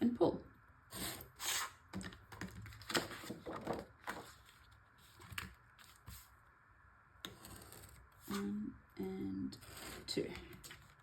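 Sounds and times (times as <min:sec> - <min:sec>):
paper scraping and rustling: 0:02.6 - 0:06.3.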